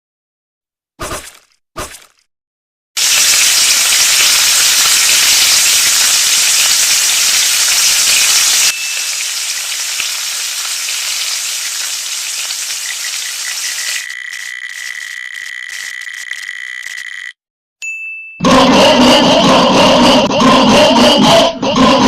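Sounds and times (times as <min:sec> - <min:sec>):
crackling hiss: 0:06.9 - 0:14.1.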